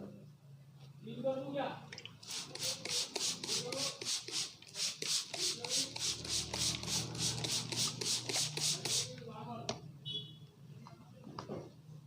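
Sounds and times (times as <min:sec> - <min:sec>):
hands rubbing hair: 0:02.2 - 0:09.2.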